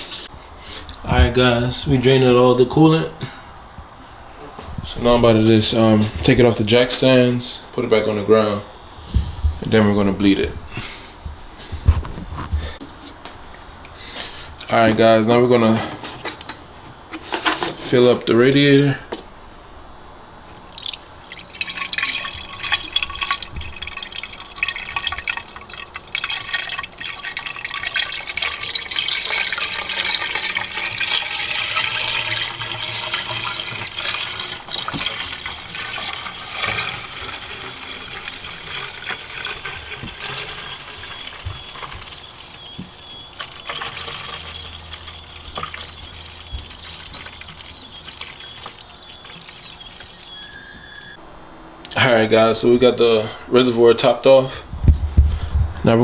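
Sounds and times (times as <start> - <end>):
coolant pouring into reservoir: 20.6 - 51.1.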